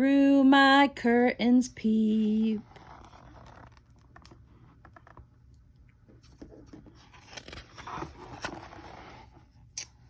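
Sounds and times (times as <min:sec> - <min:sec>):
book pages rustling: 0:02.6 - 0:10.0.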